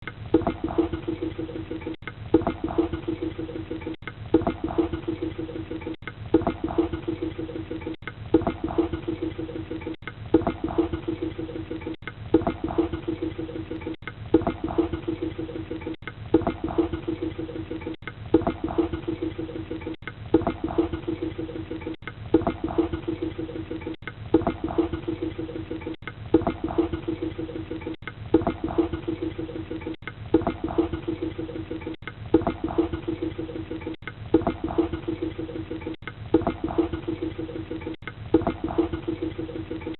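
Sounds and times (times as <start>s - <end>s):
water draining down a drain: 0.0s - 39.9s.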